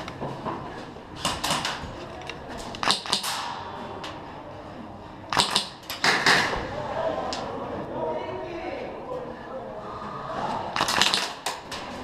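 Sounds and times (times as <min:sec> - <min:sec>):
airsoft guns firing: 0:02.8 - 0:03.6, 0:05.3 - 0:06.5, 0:10.8 - 0:11.7.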